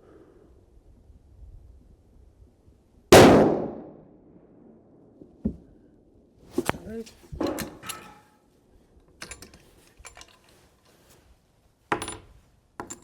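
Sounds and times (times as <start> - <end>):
small clicks and taps of gear: 9.0 - 11.0
short rustle: 9.3 - 12.5.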